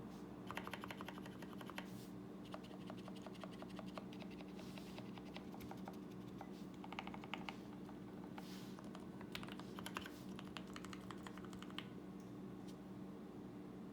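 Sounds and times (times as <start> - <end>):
mechanical keyboard typing: 0.5 - 1.9, 6.8 - 8.2, 8.8 - 11.9.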